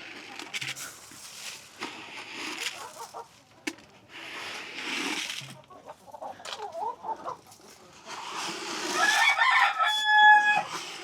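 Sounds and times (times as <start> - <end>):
chickens clucking: 2.6 - 3.6, 5.4 - 8.2.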